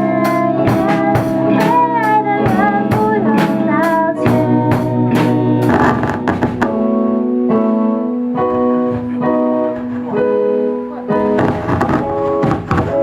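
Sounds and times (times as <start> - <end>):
steady beat: 0.0 - 7.0
sung melody over chords: 0.0 - 12.4.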